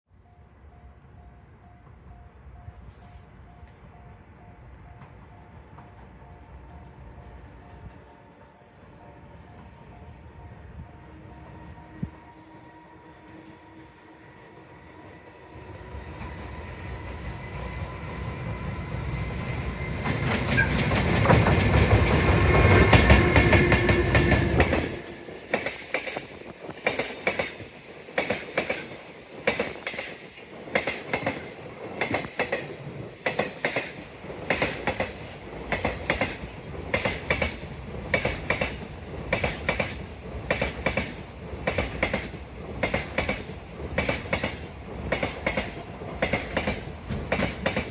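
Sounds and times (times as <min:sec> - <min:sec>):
electric locomotive rumbling past: 0:00.2 - 0:47.9
wheels clickety-clack over rail joints: 0:04.6 - 0:06.4, 0:19.7 - 0:47.9.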